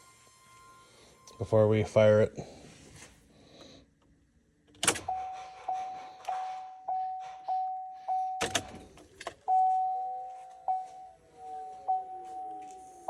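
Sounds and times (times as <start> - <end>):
dash warning chime dinging: 5.1 - 8.8, 9.4 - 12.7
two-tone chime: 9.5 - 13.0.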